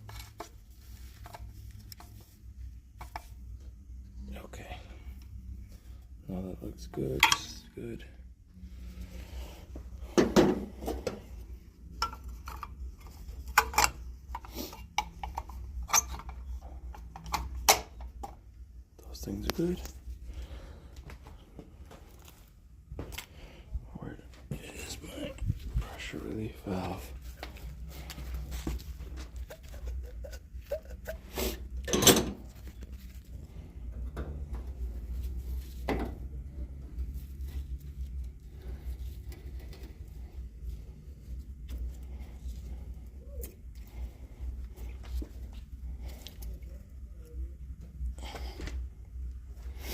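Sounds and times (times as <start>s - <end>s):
steady low hum: 0.0s - 49.9s
metal tools clinking: 7.1s - 7.6s, 31.9s - 32.4s
parts knocking and clicking: 11.9s - 18.4s.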